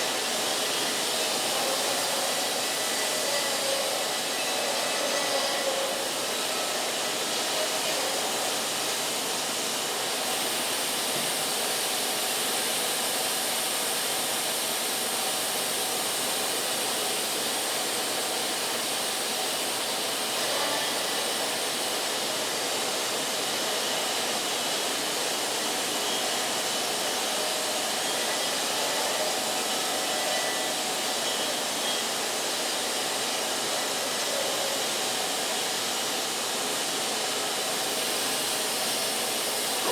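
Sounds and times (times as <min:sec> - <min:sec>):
band sawmill running: 0:00.0 - 0:39.9.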